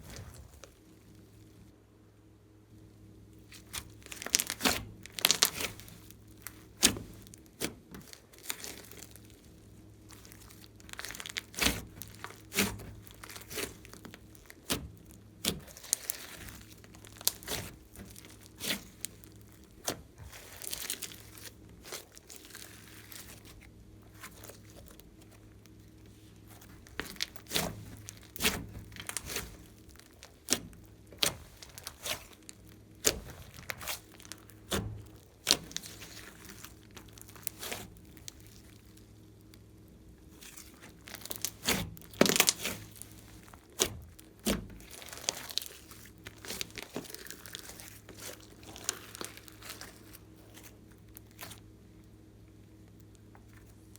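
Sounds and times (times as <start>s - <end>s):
slime crackling: 3.4s - 52.2s
slime squishing and popping: 3.5s - 9.5s, 10.1s - 25.8s, 26.5s - 39.6s, 40.4s - 51.7s.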